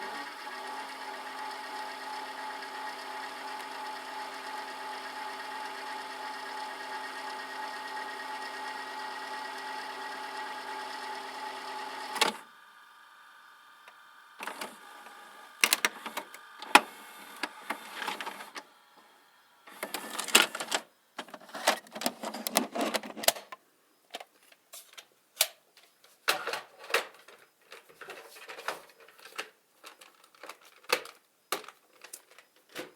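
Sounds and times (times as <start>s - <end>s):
tape mechanism clicks and clunks: 12.1s - 12.4s, 13.9s - 18.7s, 19.7s - 24.3s
faint hum: 12.2s - 24.3s.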